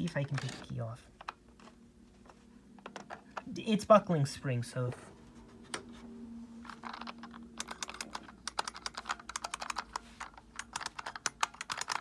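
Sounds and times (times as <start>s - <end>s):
low steady hum: 0.0s - 12.0s
typewriter keys clicking: 6.9s - 12.0s.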